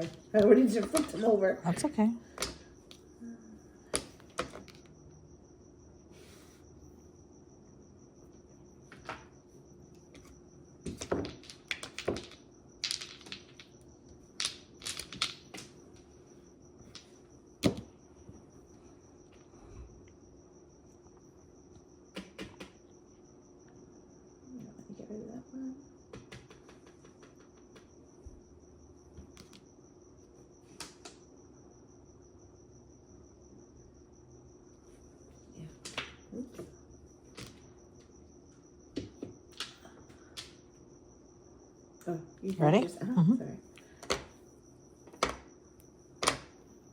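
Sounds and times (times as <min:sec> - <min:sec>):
mahjong tiles clicking: 0:11.0 - 0:13.8, 0:14.4 - 0:15.7.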